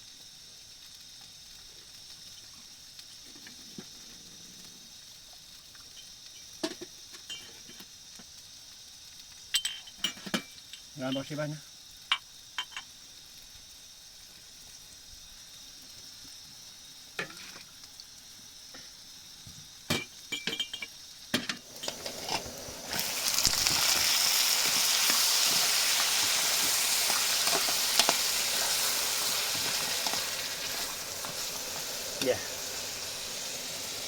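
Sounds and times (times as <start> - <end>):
faint frying hiss: 0.0 - 34.0
loud steady sizzle: 0.0 - 34.0
utensils clinking: 20.0 - 24.0.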